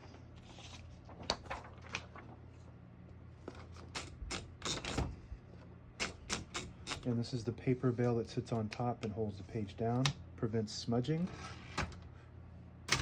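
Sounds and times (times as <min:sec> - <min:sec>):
typewriter parts clicking: 0:03.9 - 0:05.1, 0:06.0 - 0:07.1.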